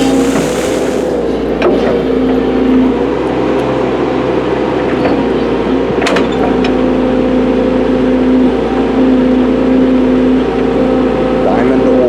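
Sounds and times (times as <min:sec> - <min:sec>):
diesel engine under load: 0:00.0 - 0:01.6.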